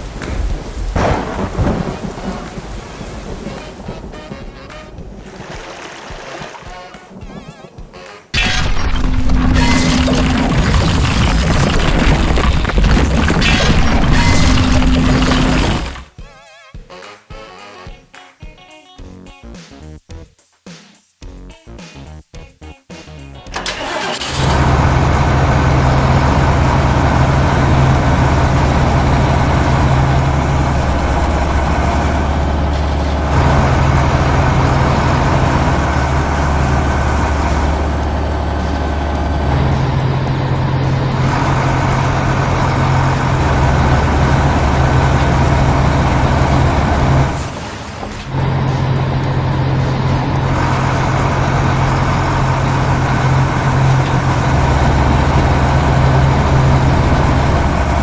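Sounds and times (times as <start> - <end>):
heavy vehicle engine running: 0.0 - 5.4, 8.4 - 16.1, 23.5 - 58.0
background music: 15.3 - 24.5.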